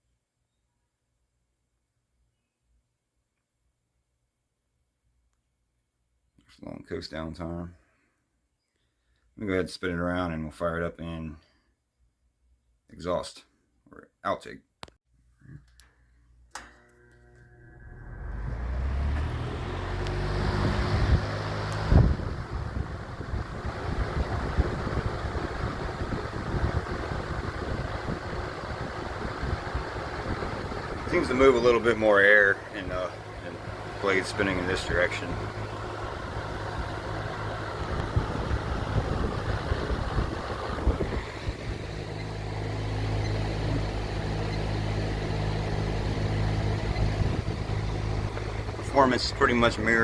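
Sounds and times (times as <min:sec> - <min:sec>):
box fan running: 0:16.5 - 0:50.0.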